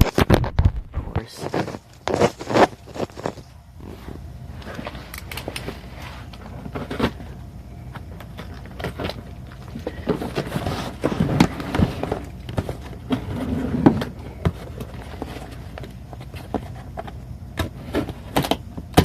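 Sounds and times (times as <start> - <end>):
packaging rustling: 1.3 - 7.4.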